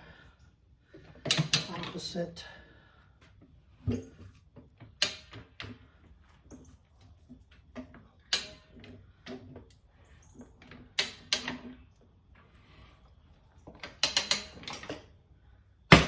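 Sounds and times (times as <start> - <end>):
tire changer tool clicks and knocks: 4.9 - 5.7, 7.8 - 9.0, 11.0 - 11.8, 13.7 - 15.0.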